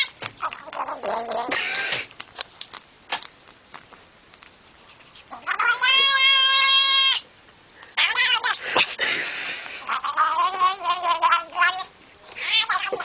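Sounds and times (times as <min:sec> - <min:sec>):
cat yowling: 0:05.3 - 0:07.2, 0:08.0 - 0:08.6, 0:09.9 - 0:13.0.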